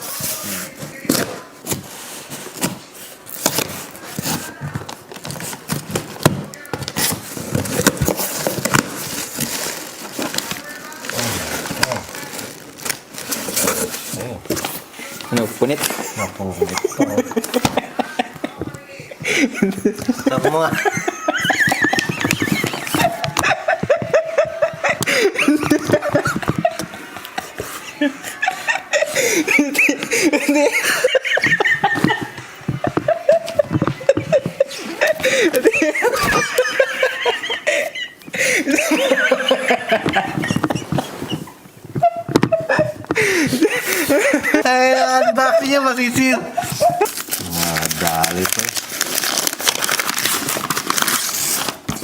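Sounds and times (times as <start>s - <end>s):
packaging rustling and scraping: 0.0s - 52.0s
people laughing: 15.4s - 48.3s.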